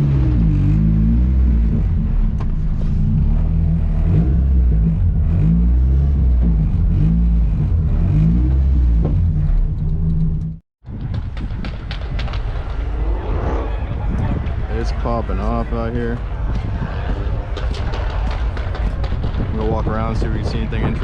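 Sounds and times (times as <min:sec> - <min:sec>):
car engine running: 0:00.0 - 0:10.6.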